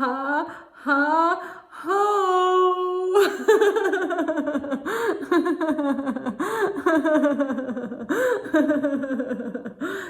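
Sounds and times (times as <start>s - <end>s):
woman laughing heartily: 3.2s - 10.0s.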